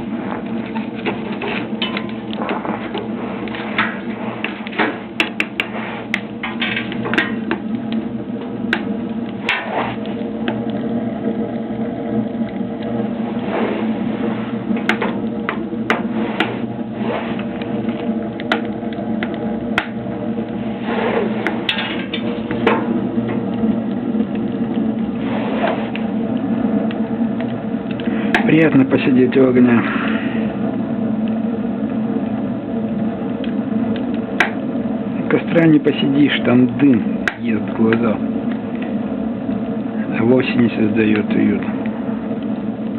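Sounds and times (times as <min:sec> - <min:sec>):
steady background noise: 0:00.0 - 0:42.9
wood fire crackling in stove: 0:00.0 - 0:42.9.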